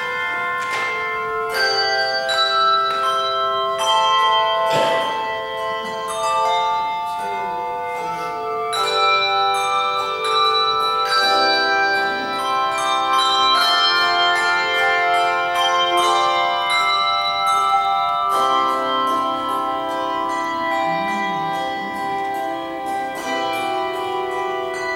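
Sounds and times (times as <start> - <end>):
handbell choir playing chords: 0.0 - 24.9.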